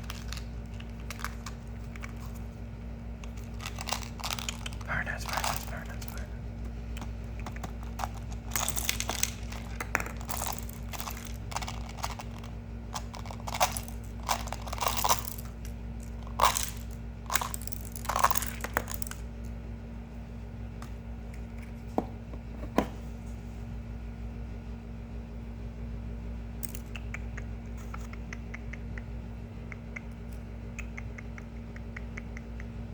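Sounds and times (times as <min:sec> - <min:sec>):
close-up clicks and crunchy scrapes: 0:00.0 - 0:02.4, 0:03.2 - 0:06.3, 0:06.9 - 0:19.2.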